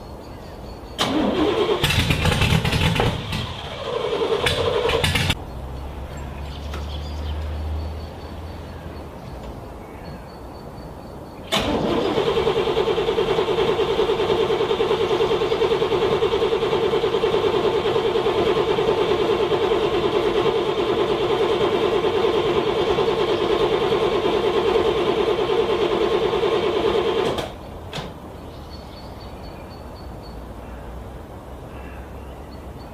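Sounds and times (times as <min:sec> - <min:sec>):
car starter cranking engine: 0:01.0 - 0:05.4, 0:11.5 - 0:28.1.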